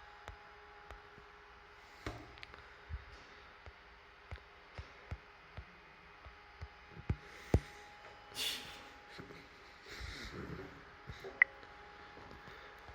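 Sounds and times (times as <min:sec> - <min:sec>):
faint steady hum: 0:00.0 - 0:12.9.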